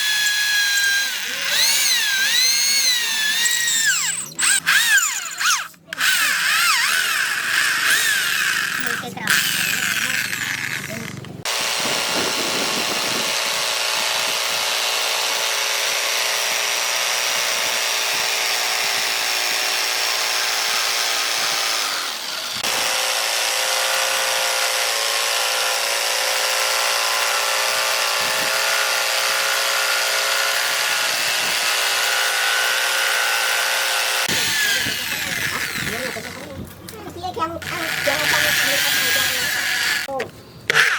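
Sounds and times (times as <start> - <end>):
power tool whining: 0.0 - 40.9.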